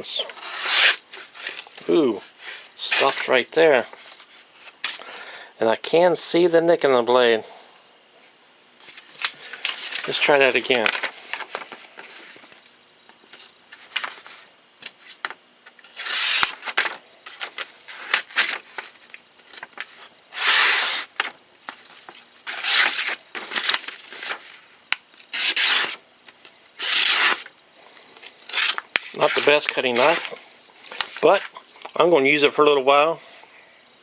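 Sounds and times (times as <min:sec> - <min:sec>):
knife blade scraping through material: 0:00.4 - 0:01.6.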